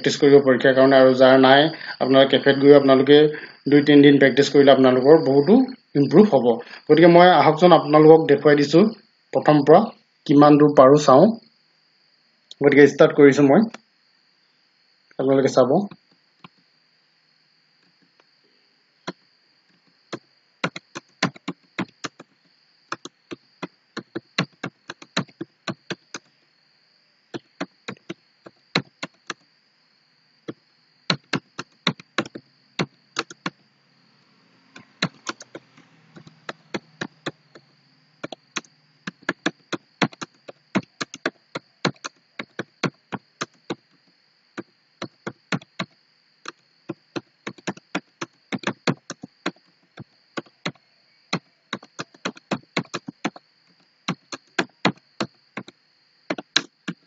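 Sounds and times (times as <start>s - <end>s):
faint high-pitched whine: 0.0s - 57.0s
laptop keyboard typing: 20.1s - 22.3s, 22.9s - 26.3s, 27.4s - 29.4s, 30.5s - 33.6s, 34.8s - 43.9s, 44.6s - 57.0s.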